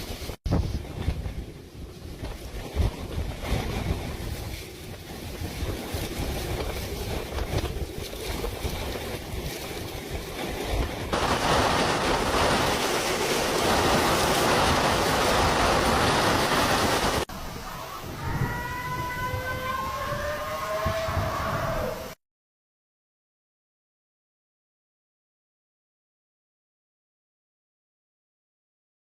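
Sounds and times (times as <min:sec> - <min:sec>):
storm wind buffeting microphone: 0:00.0 - 0:22.2
steady rushing wind hiss: 0:11.0 - 0:18.5.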